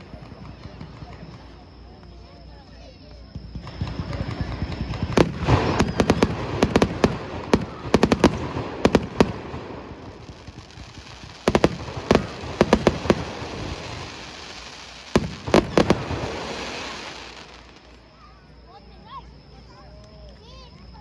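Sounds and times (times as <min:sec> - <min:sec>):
fireworks bursting with sharp bangs: 0:00.0 - 0:18.3
rumbling echo: 0:03.6 - 0:17.2.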